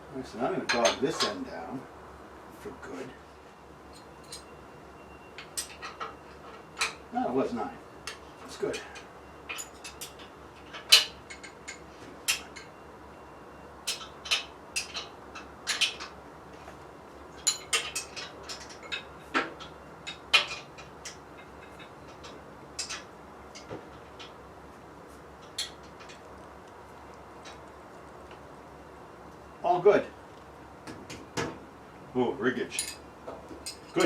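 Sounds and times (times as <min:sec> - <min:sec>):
wrench clinking against metal: 0:08.1 - 0:12.8, 0:17.4 - 0:23.7, 0:32.7 - 0:34.0.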